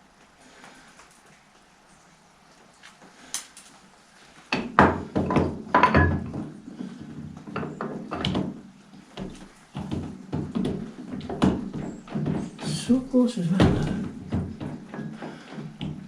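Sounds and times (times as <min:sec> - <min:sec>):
heavy metal clunks and knocks: 0:04.5 - 0:16.0.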